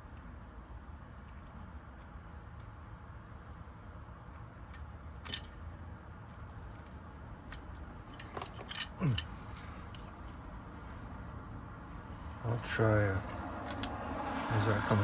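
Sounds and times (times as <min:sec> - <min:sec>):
low steady hum: 0:00.0 - 0:15.0
metal lock parts clicking: 0:04.3 - 0:10.4.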